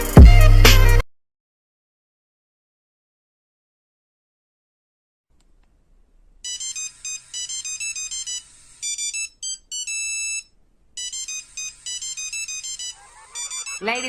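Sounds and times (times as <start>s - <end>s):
electronic ringtone melody: 6.5s - 14.0s.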